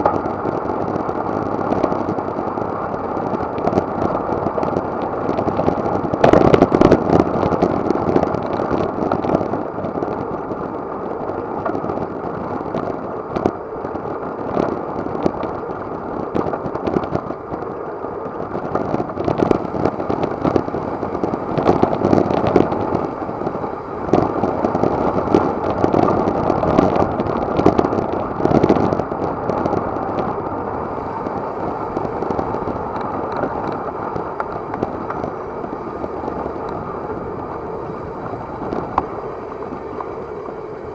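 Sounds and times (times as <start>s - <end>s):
wind buffeting microphone: 0.0s - 40.9s.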